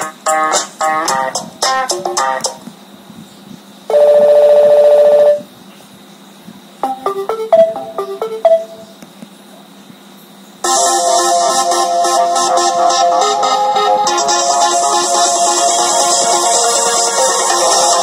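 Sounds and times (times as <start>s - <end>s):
phone alert bright notes: 6.8s - 8.8s
rapidly pulsing phone alert tone: 6.8s - 8.9s, 10.7s - 18.0s.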